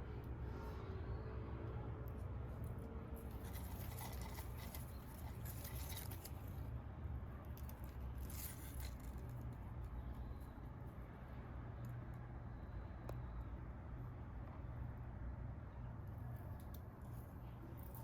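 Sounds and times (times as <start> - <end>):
light scratching and rustling: 3.2 - 6.6.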